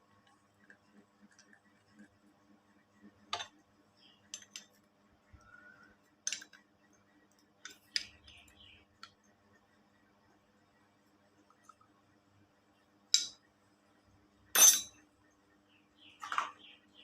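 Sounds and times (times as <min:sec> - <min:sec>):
metal parts and tools clinking: 0:14.6 - 0:15.0.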